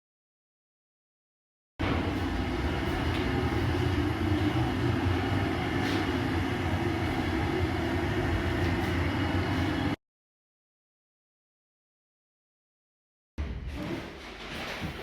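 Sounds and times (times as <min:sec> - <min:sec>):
low mechanical rumble and hum: 0:01.8 - 0:10.0.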